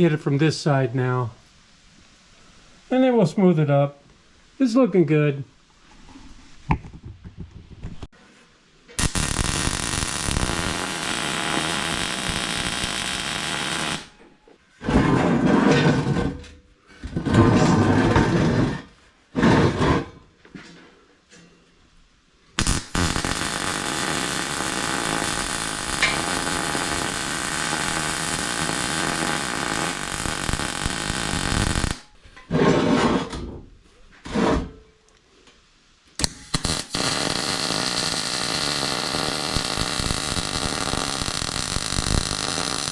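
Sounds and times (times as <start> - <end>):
angle grinder on steel: 22.8 - 32.0.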